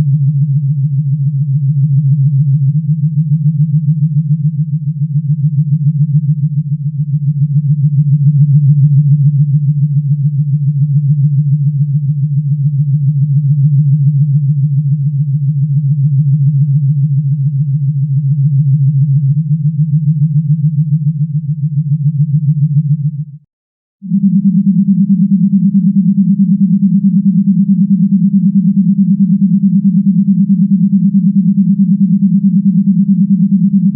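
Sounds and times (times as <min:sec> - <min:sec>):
synthesized sci-fi hum: 0:24.1 - 0:33.9.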